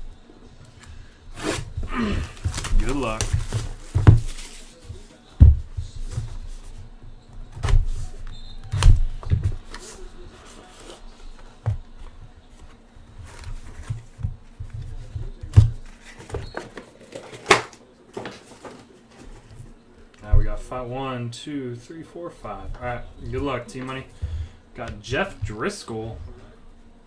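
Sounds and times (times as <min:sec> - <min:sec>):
cardboard knocks and thumps: 0:00.8 - 0:20.7, 0:22.5 - 0:26.7
pack tearing and crinkling: 0:01.4 - 0:04.8.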